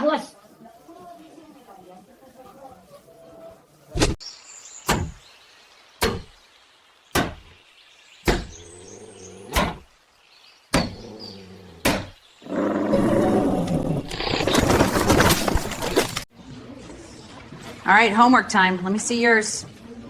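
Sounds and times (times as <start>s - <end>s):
sharp knocks: 4.9s - 5.2s, 6.0s - 6.4s, 7.2s - 7.5s, 8.3s - 8.6s, 9.6s - 9.9s, 10.7s - 11.0s, 11.8s - 12.2s.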